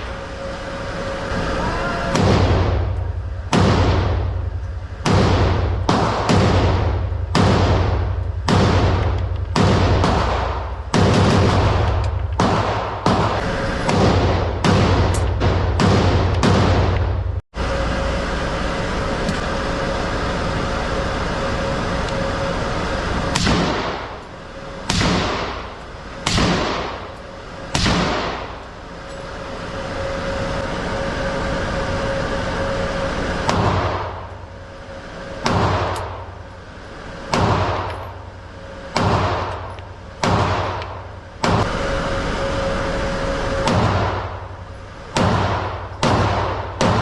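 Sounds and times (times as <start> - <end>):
steady background hum: 0.0 - 47.0
gunshots with ringing tail: 1.1 - 17.4, 23.2 - 30.2, 32.0 - 36.4, 37.1 - 47.0.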